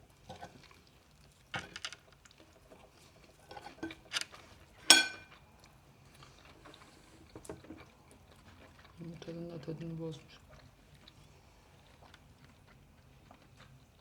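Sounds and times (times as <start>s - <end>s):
tableware clinking: 4.8s - 5.3s.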